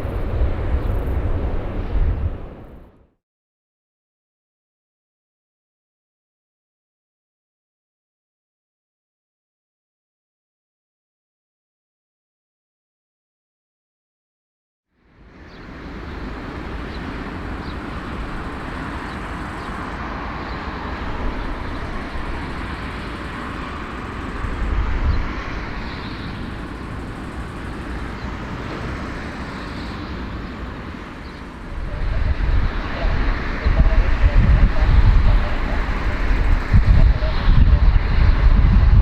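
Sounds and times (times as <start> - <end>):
vehicle rumble with hiss: 15.0 - 39.0.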